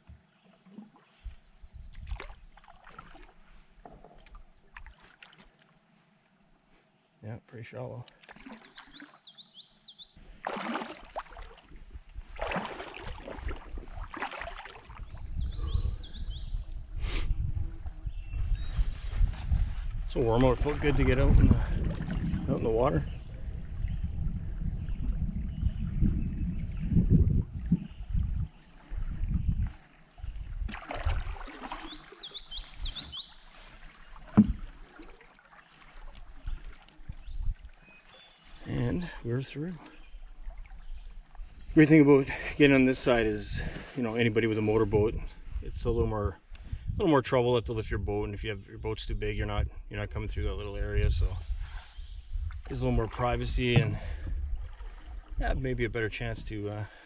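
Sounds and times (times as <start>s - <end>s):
water splashing and sloshing: 0.0s - 6.7s, 7.9s - 15.4s, 18.6s - 44.3s, 51.7s - 56.2s
bird chirping: 8.6s - 10.2s, 15.2s - 16.6s, 31.8s - 33.7s
hollow knock: 53.7s - 54.1s.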